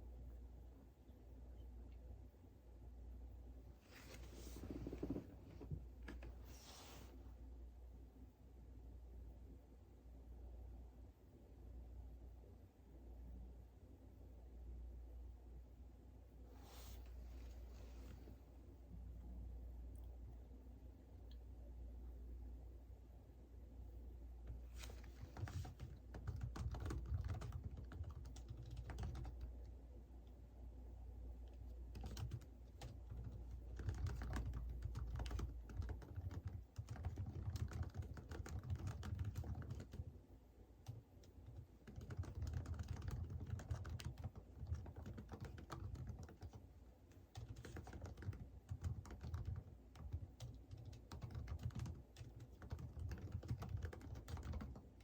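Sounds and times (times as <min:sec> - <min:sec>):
faint low hum: 0:00.0 - 0:55.0
computer keyboard typing: 0:24.9 - 0:29.5, 0:31.4 - 0:40.2, 0:40.8 - 0:55.0.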